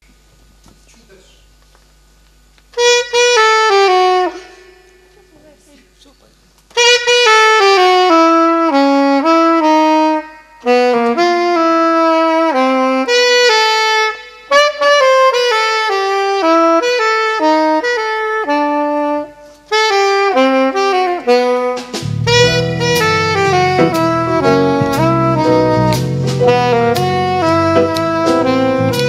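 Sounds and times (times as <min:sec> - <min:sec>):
saxophone solo melody: 0:02.8 - 0:05.1, 0:06.8 - 0:29.0
lower accompaniment: 0:20.6 - 0:29.0.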